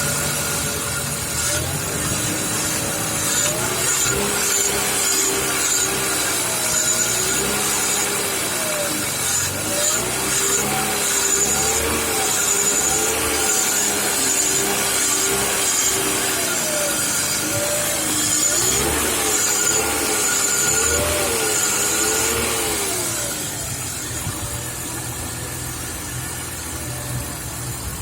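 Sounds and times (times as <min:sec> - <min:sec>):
car engine revving: 0:00.0 - 0:28.0
intake whistle and ringing: 0:00.0 - 0:28.0.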